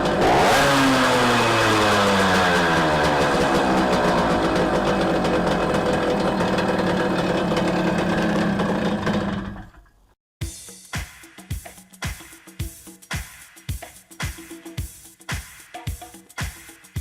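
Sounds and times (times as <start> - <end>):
moped two-stroke engine running: 0.0 - 9.8
beat-driven music: 10.4 - 17.0.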